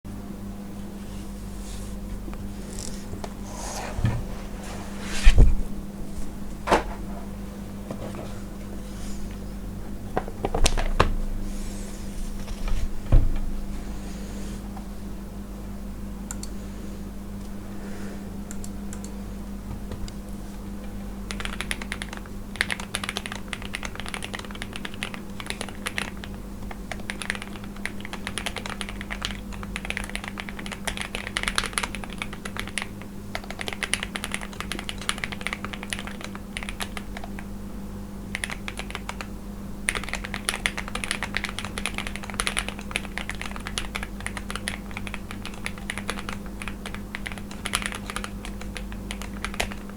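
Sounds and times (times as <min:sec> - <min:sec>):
mechanical keyboard typing: 0:21.3 - 0:37.5, 0:38.3 - 0:39.3, 0:39.9 - 0:49.9.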